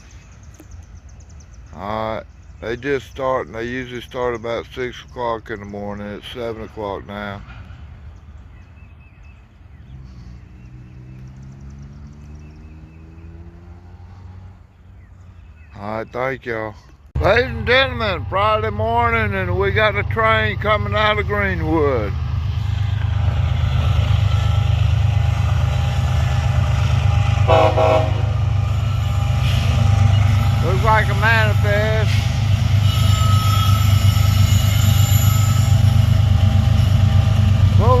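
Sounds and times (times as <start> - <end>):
birds chirping: 0.0 - 38.0
diesel locomotive rumbling: 0.0 - 38.0
engine hum rising in pitch: 9.8 - 14.8
locomotive horn toot: 24.2 - 38.0.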